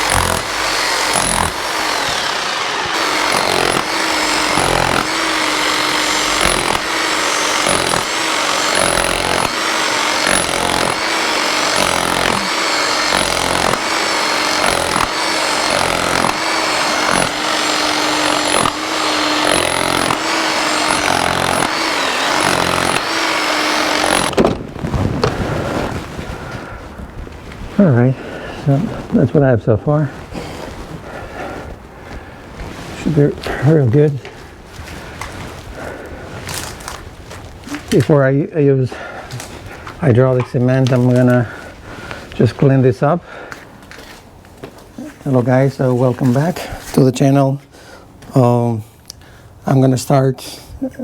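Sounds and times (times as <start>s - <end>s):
electric power tool on concrete: 0.0s - 24.6s.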